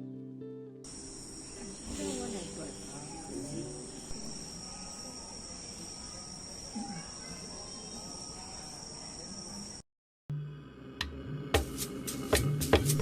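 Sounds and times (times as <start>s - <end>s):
distant human voices: 0.9s - 9.8s
night insects chirping: 0.9s - 9.8s.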